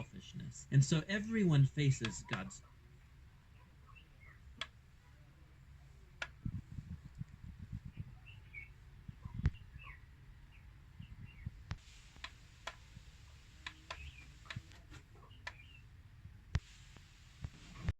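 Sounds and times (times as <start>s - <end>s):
faint bird chirps: 3.5s - 4.6s, 7.7s - 11.6s, 13.7s - 16.0s.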